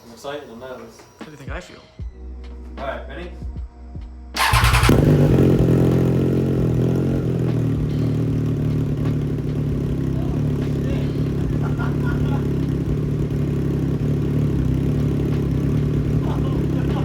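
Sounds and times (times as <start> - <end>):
motorcycle engine idling: 4.4 - 17.0.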